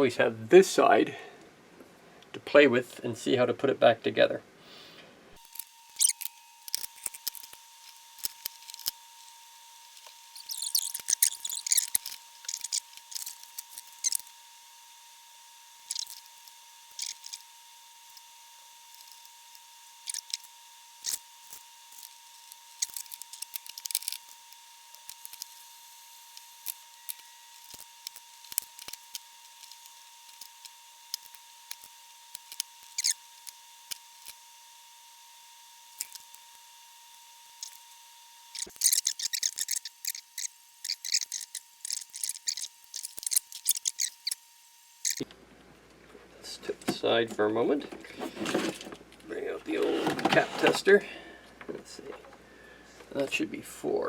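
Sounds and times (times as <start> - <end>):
hand tools clicking and snipping: 38.6 - 44.4.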